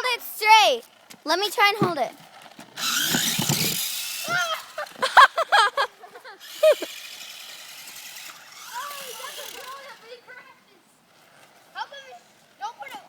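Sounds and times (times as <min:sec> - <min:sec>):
children shouting and squealing: 0:04.1 - 0:10.9.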